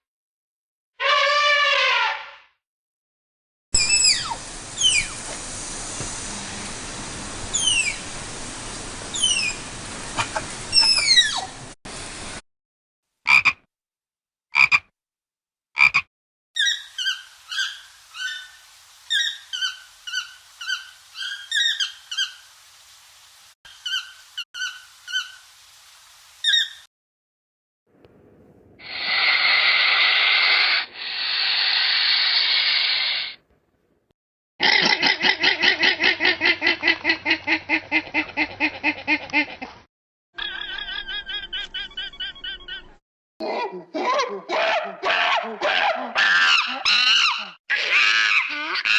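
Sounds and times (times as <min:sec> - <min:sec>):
long harsh animal calls: 0:01.0 - 0:02.2, 0:28.8 - 0:33.4
falling whistled animal calls: 0:03.8 - 0:05.2, 0:07.5 - 0:08.0, 0:09.1 - 0:09.6, 0:10.7 - 0:11.5
repeated chirping or croaking calls: 0:13.3 - 0:13.6, 0:14.5 - 0:14.9, 0:15.8 - 0:18.5, 0:40.4 - 0:42.2.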